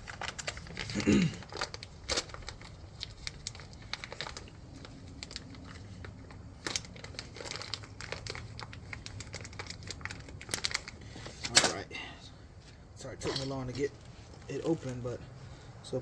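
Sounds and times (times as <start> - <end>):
plastic packaging crinkling: 0.0 - 11.0.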